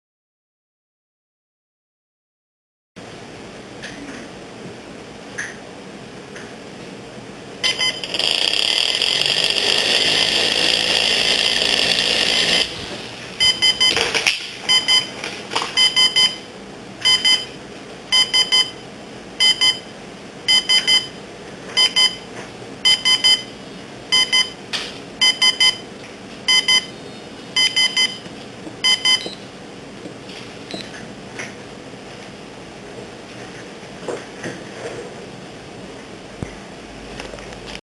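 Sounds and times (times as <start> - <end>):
alarm clock beeping: 7.6 - 9.2, 13.4 - 14.0, 14.7 - 15.1, 15.8 - 16.4, 18.1 - 18.8, 19.4 - 19.9, 20.5 - 21.1, 21.8 - 22.2, 22.9 - 23.5, 24.1 - 24.6, 25.2 - 25.8, 26.5 - 26.9, 27.6 - 28.2, 28.8 - 29.4
toy rotor motor whirring: 8.1 - 12.7.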